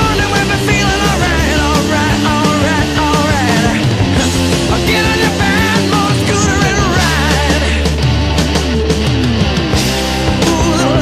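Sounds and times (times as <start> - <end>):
bass and drums: 0.0 - 11.0
distorted electric guitar: 0.0 - 11.0.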